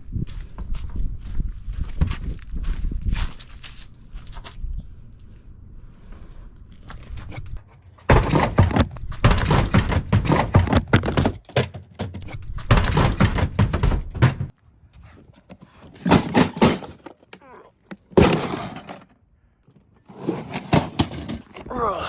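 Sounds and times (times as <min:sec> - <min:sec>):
plastic toolbox tumbling on ground: 0:07.3 - 0:21.8.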